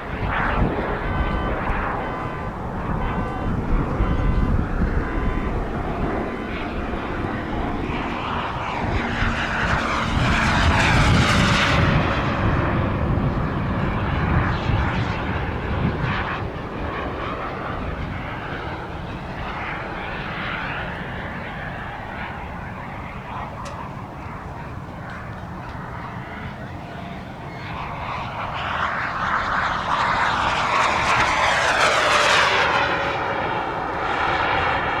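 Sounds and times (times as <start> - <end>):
model jet engine whining: 0.0 - 35.0
wind on microphone: 0.0 - 35.0.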